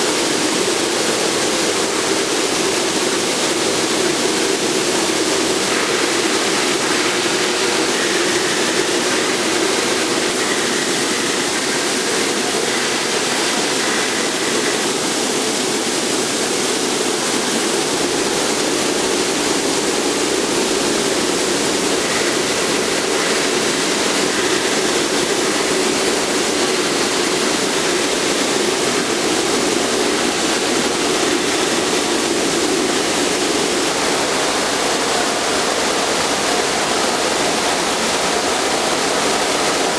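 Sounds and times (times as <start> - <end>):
welding equipment hiss: 4.1 - 14.9, 19.6 - 39.9.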